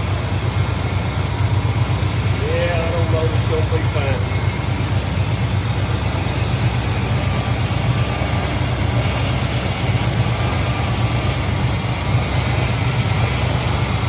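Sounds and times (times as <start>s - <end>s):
truck engine idling: 0.0s - 14.0s.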